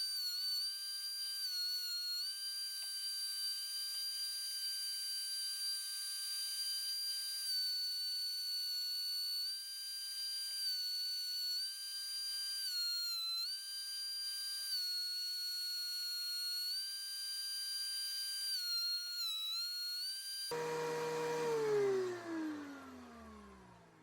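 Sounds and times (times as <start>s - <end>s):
thickness planer whining: 20.5s - 24.0s.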